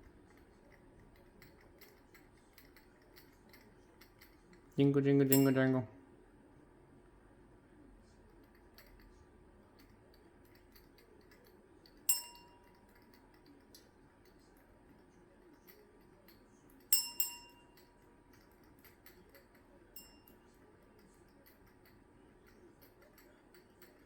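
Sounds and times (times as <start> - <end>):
toy bell ringing: 5.3 - 5.8, 12.0 - 13.0, 16.8 - 21.9.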